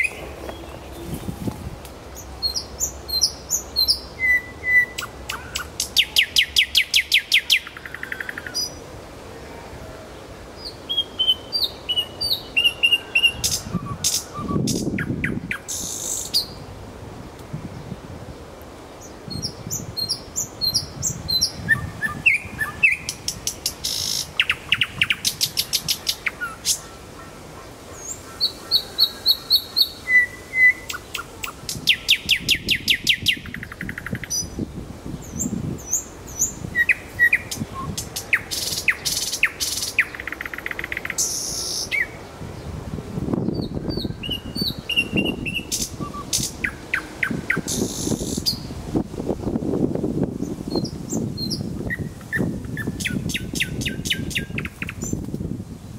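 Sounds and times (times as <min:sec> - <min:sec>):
nightingale singing: 0:00.0 - 0:01.3, 0:02.1 - 0:08.8, 0:10.6 - 0:16.7, 0:18.9 - 0:27.0, 0:27.9 - 0:42.7, 0:43.4 - 0:48.8, 0:50.4 - 0:55.3.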